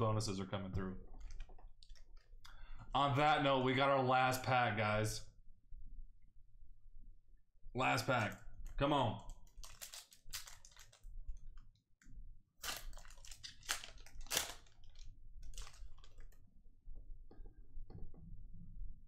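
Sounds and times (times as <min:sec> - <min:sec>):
foil wrapper tearing and crinkling: 0:09.3 - 0:11.1, 0:12.6 - 0:16.3.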